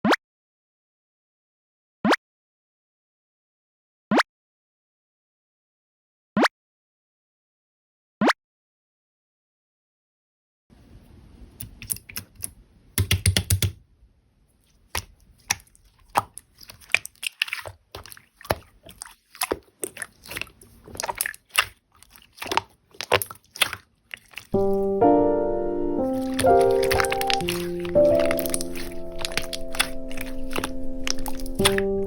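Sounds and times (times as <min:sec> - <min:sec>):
keyboard typing: 0:11.6 - 0:13.8.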